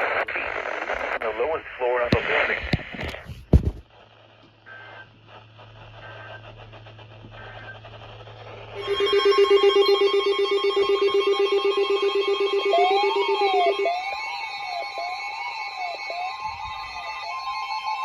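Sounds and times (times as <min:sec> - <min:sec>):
low steady hum: 0:00.0 - 0:14.2
pulsing electronic alert tone: 0:08.8 - 0:18.0.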